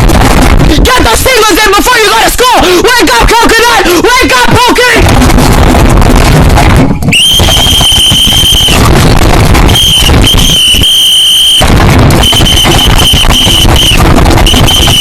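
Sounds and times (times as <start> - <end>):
loud crackle: 0.0 - 1.4, 5.0 - 15.0
distorted piercing alarm tone: 7.1 - 15.0.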